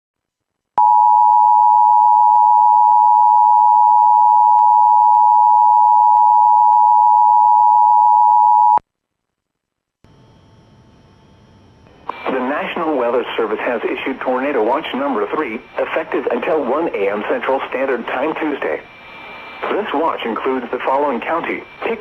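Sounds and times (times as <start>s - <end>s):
faint broadcast hiss: 12.0s - 22.0s.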